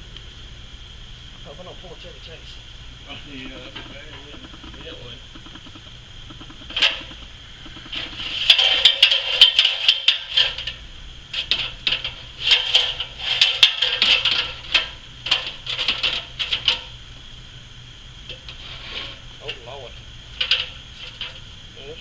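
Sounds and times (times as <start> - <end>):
ladder rattling and clanking: 6.3 - 17.0, 20.4 - 21.5.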